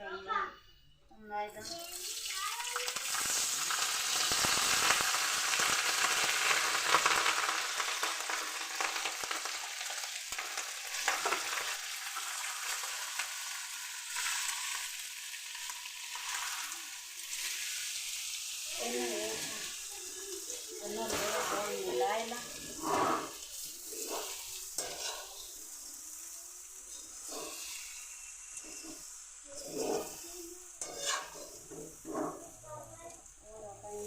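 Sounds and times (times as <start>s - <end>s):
food frying in hot fat: 1.3s - 34.0s
spoon scraping a pot: 21.1s - 25.6s, 26.9s - 30.2s, 30.8s - 32.6s.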